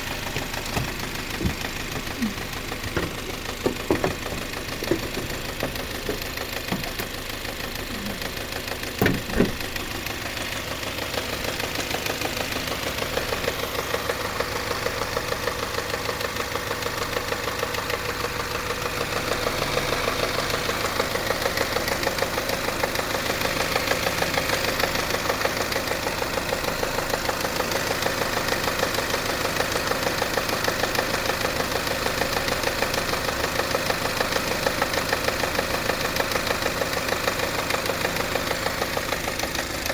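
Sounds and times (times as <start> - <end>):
engine idling with ticking knock: 0.0 - 39.9
sharp engine knocks: 0.2 - 7.4, 8.9 - 9.8.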